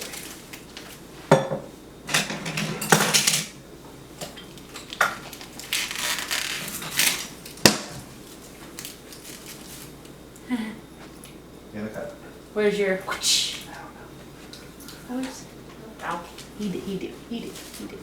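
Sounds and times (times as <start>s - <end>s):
wrapping paper rustling: 0.0s - 1.1s, 4.6s - 10.2s, 16.0s - 18.0s.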